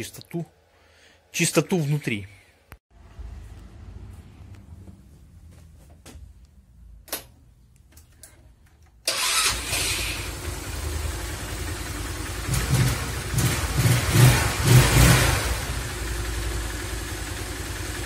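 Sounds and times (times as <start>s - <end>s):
scooter engine running: 9.2s - 18.0s.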